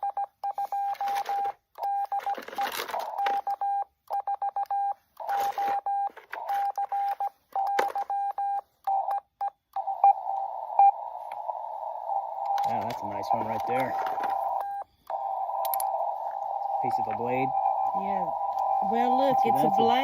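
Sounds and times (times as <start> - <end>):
morse code tone: 3.0 - 20.0
bursts of noise: 9.9 - 20.0
radio hiss: 10.5 - 20.0.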